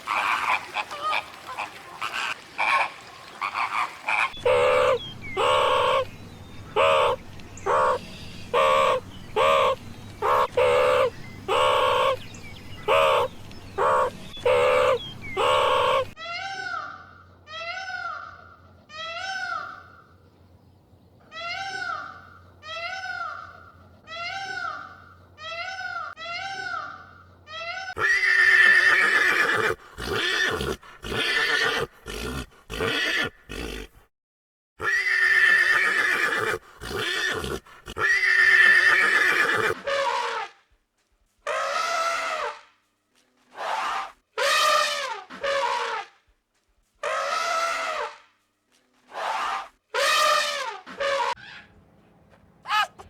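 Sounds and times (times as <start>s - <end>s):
horse neighing: 27.9s - 34.0s, 34.8s - 39.8s.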